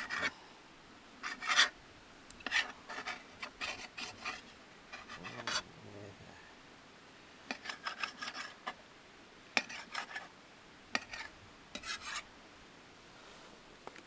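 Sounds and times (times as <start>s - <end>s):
knife cutting food: 0.0s - 0.3s, 1.2s - 1.7s, 2.4s - 4.4s, 5.0s - 5.6s, 7.5s - 8.7s, 11.0s - 12.2s.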